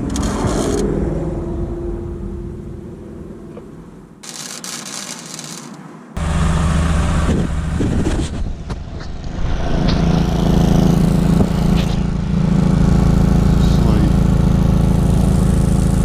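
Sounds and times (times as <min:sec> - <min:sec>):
car engine running: 0:03.5 - 0:16.0.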